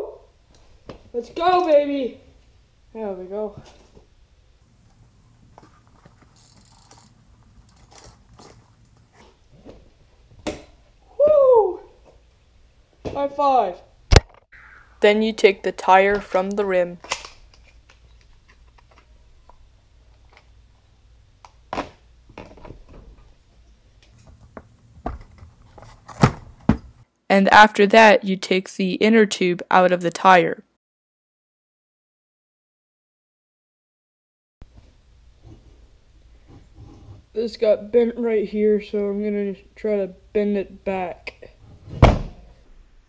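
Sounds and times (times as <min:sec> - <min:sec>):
bicycle wheel scraping: 0:05.5 - 0:09.4.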